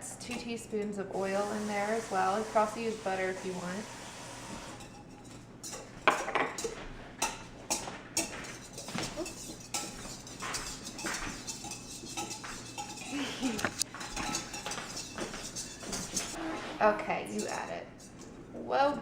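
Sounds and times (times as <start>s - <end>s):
utensils clinking against bowl: 0.1s - 1.0s, 4.7s - 19.0s.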